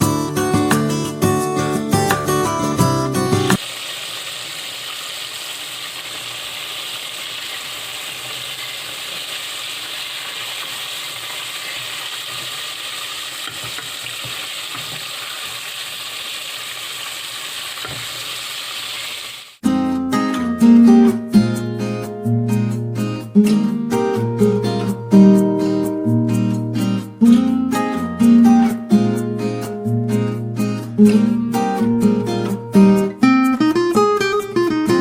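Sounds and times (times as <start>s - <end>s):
chicken wings sizzling in hot oil: 3.6s - 19.6s.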